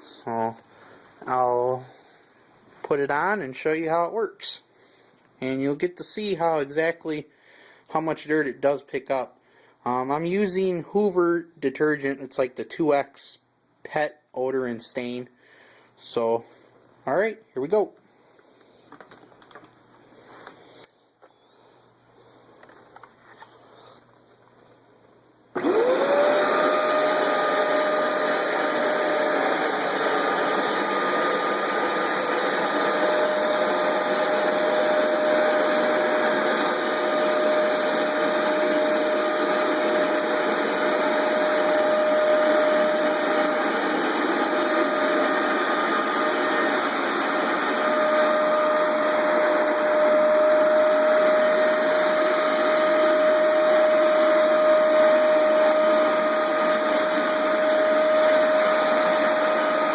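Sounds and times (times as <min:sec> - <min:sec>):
carpet cleaner motor whine: 0:25.5 - 0:59.9.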